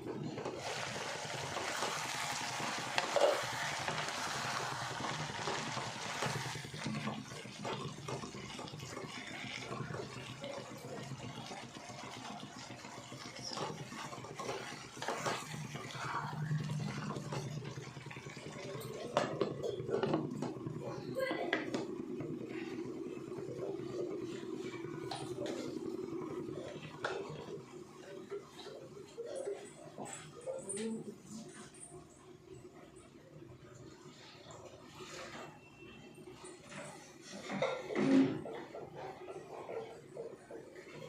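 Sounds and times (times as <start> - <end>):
vegetables sizzling in a pan: 0.5 - 18.5.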